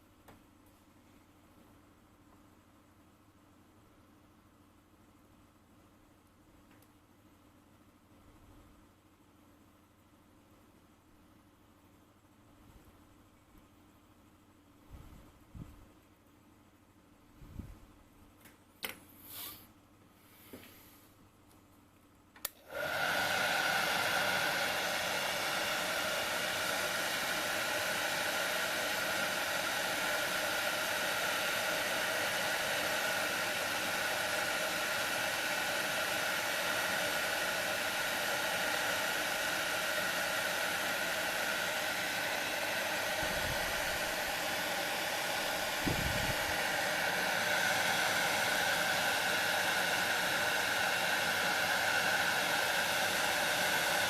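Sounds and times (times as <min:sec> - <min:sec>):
hot-air blower running: 0:22.4 - 0:54.0.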